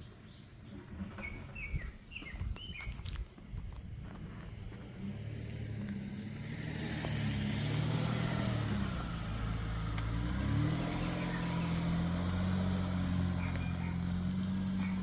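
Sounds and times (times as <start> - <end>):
car engine running: 3.9 - 15.0.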